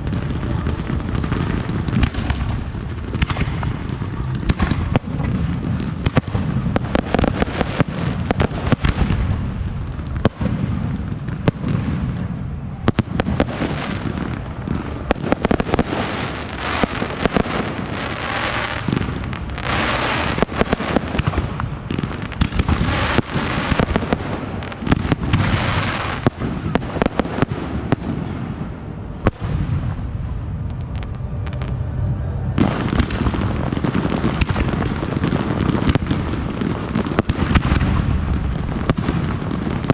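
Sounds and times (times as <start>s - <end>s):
fireworks crackling and banging: 0.0s - 39.9s.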